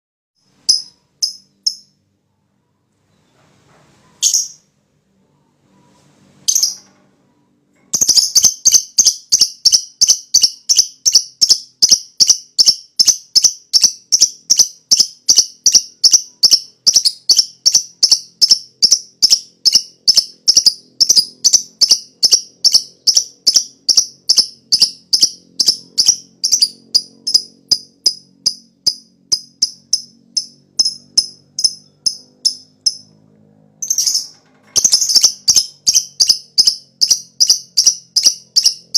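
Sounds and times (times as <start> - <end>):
lovebird chattering: 8.0 - 33.1, 33.8 - 38.9.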